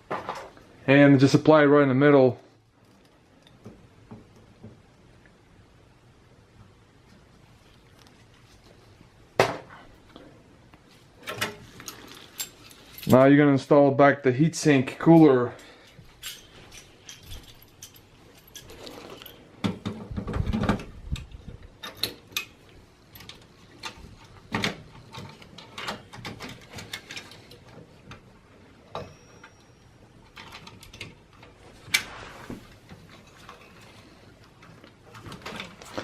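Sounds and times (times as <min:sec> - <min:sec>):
heatsink clicking and scraping: 0:15.1 - 0:28.3
parts rattling: 0:15.2 - 0:28.3.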